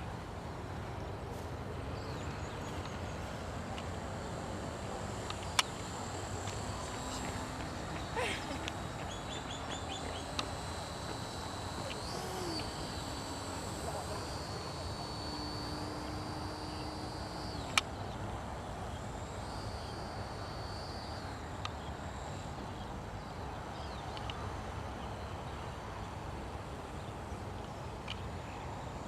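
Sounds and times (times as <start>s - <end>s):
model plane motor whining: 3.7s - 22.7s.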